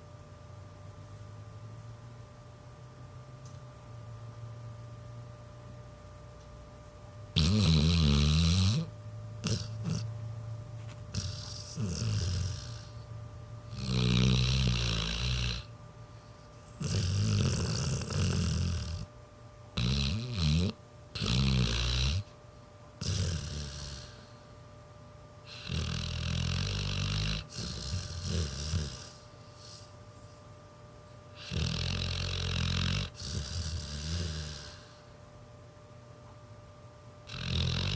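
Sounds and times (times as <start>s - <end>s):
dog snoring: 7.3s - 10.1s, 10.8s - 22.4s, 23.0s - 24.6s, 25.4s - 30.6s, 31.3s - 35.2s, 37.2s - 37.9s.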